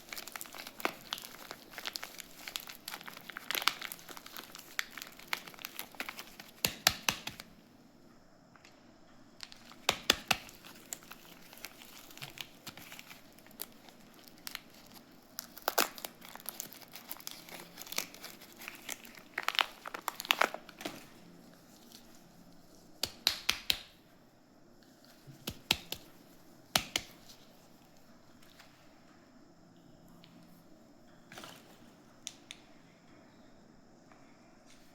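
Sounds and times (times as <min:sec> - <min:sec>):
wrapper crinkling and tearing: 0:00.0 - 0:07.5, 0:09.4 - 0:22.8.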